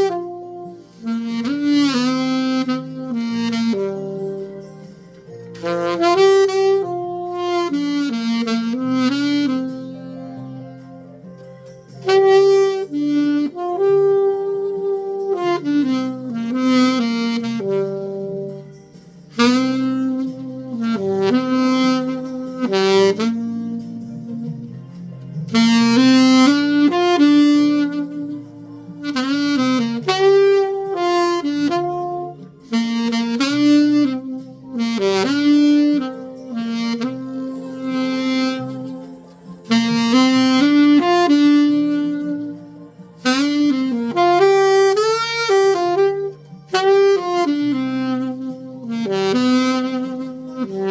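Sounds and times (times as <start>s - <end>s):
alto saxophone slow melody: 0.0s - 50.9s
steady lower accompaniment: 0.0s - 50.9s.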